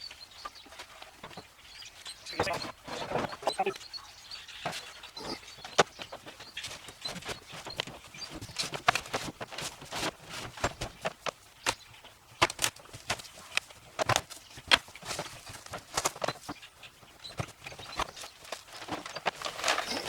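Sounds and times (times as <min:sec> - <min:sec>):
clicks and knocks of unpacking: 0:12.4 - 0:16.6, 0:17.3 - 0:20.0.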